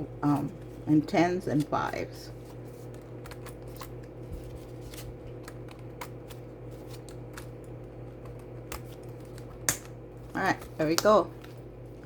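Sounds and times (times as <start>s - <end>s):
steady low hum: 0.0s - 12.0s
paper rustling: 1.4s - 7.2s.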